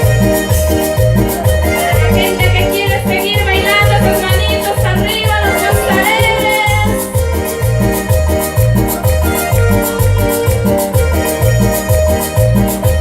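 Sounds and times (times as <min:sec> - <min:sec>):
latin dance music: 0:00.0 - 0:13.0
high wavering melody: 0:04.0 - 0:07.5.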